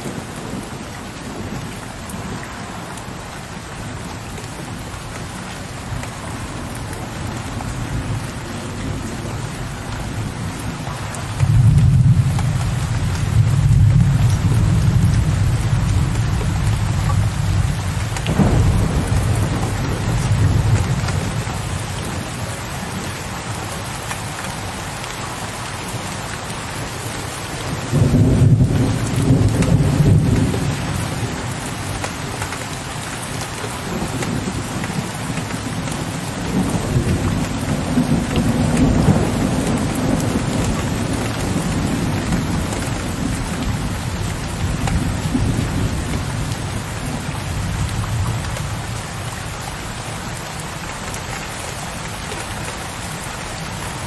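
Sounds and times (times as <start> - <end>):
steady rain: 0.0 - 54.0
low rolling thunder: 11.3 - 22.5, 27.8 - 32.4, 33.8 - 49.0.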